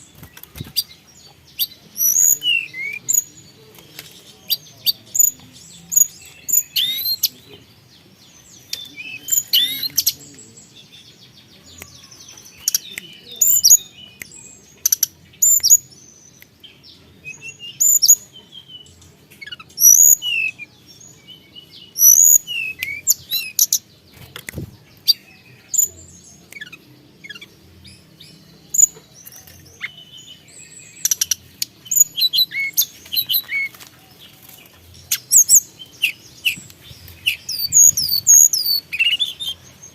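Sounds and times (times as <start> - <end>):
bird chirps and whistles: 37.3 - 39.5.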